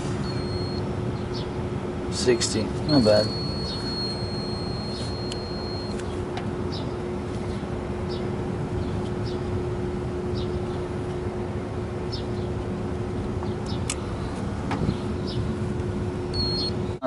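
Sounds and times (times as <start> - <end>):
machinery hum: 0.0 - 17.0
short high chirps: 2.9 - 6.0.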